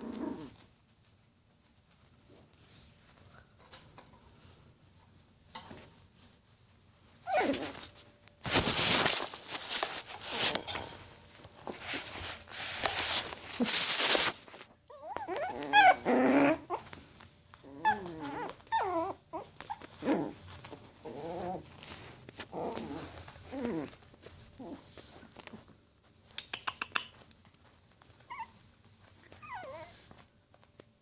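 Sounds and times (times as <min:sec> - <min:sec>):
puppy play growls: 0:00.0 - 0:00.7, 0:07.2 - 0:07.8, 0:12.7 - 0:25.7, 0:29.2 - 0:30.1
puppies scrabbling on pads: 0:07.1 - 0:31.0
puppies whimpering: 0:14.9 - 0:16.9.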